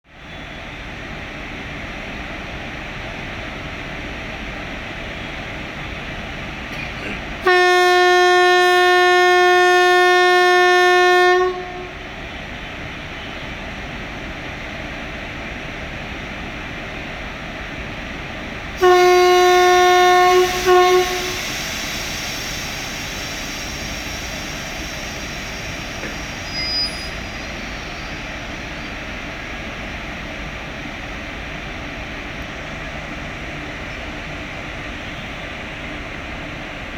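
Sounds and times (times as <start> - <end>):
locomotive air horn: 7.4 - 12.0, 18.8 - 22.0.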